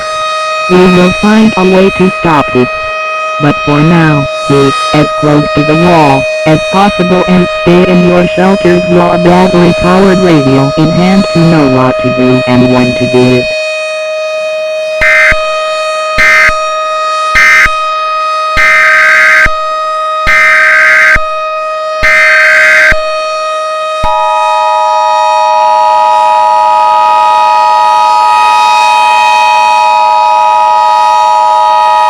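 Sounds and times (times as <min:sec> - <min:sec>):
steady electronic drone: 0:00.0 - 0:14.2, 0:24.0 - 0:28.7
two-tone attention signal: 0:00.7 - 0:13.5.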